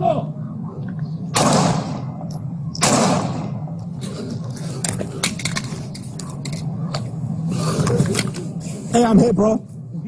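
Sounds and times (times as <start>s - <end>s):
low steady hum: 0.0s - 10.0s.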